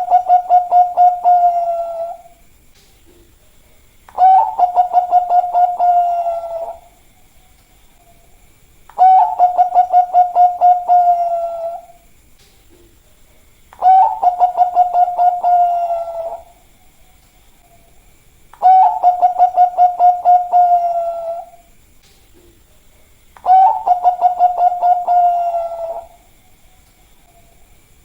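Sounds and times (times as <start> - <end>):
dove cooing: 0.0 - 2.4, 4.1 - 7.0, 9.0 - 12.0, 13.8 - 16.7, 18.6 - 21.7, 23.4 - 26.3.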